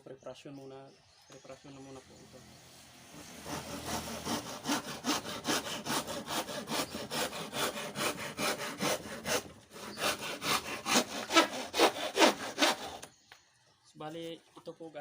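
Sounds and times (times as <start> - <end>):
handsaw cutting wood: 3.1 - 13.1.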